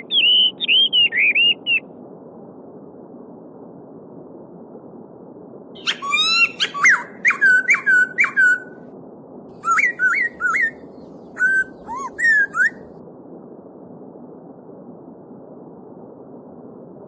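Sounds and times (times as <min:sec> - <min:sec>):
songbird singing: 0:00.0 - 0:01.9, 0:05.8 - 0:08.8, 0:09.6 - 0:12.9
babbling stream: 0:11.4 - 0:12.8.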